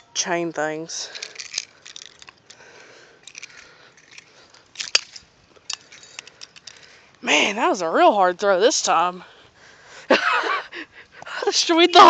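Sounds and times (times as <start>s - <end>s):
handling clicks and rattles: 1.1s - 7.0s.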